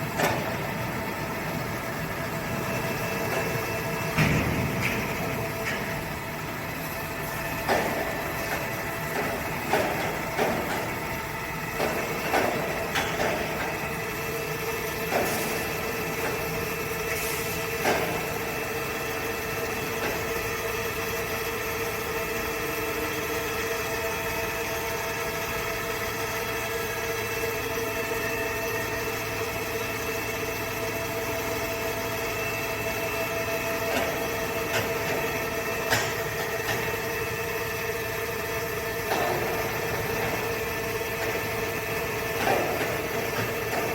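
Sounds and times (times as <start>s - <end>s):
sharp machine knocks: 2.7s - 6.2s, 7.6s - 11.0s.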